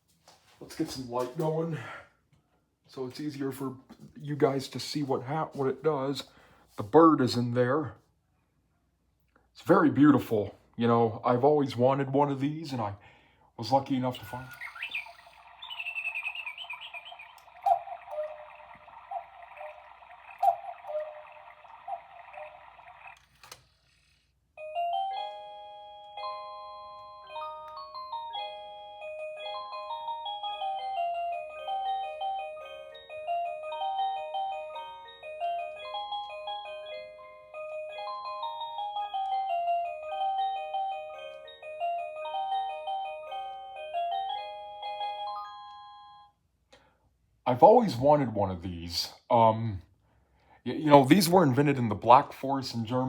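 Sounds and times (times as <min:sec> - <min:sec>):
music box melody: 0:14.2 - 0:23.4, 0:24.6 - 0:46.4
cuckoo calls: 0:14.3 - 0:23.3
clock mechanism whirring: 0:14.3 - 0:24.3.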